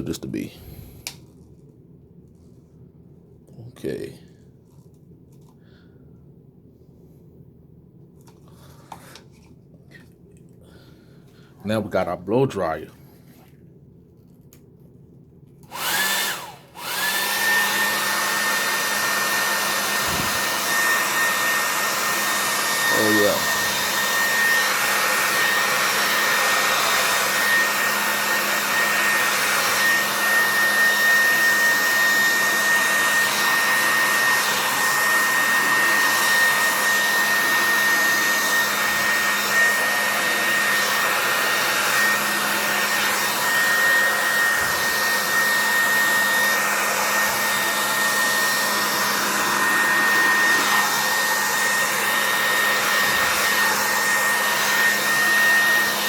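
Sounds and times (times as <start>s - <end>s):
hair dryer blowing with whine: 15.6s - 56.0s.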